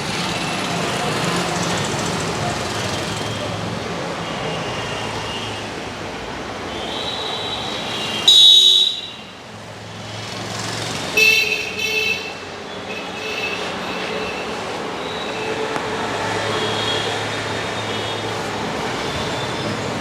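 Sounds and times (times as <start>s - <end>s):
street traffic: 0.0s - 20.0s
vehicle horns honking: 6.7s - 9.3s, 11.2s - 15.7s.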